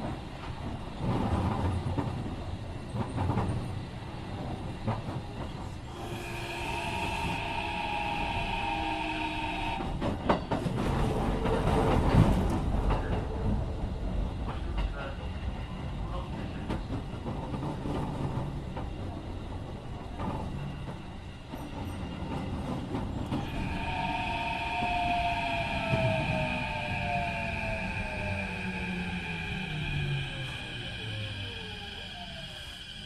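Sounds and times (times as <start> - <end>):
train inverter whine: 5.6 - 13.6, 22.8 - 33.0
train wheel clacks: 9.8 - 13.6
wheel and rail rumble: 9.8 - 33.0.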